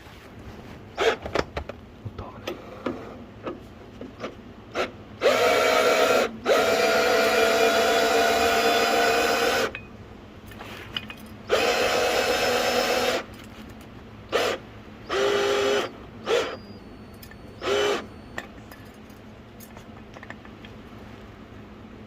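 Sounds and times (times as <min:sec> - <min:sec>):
power tool motor whining: 0:04.7 - 0:09.8, 0:11.4 - 0:13.3, 0:14.3 - 0:18.7.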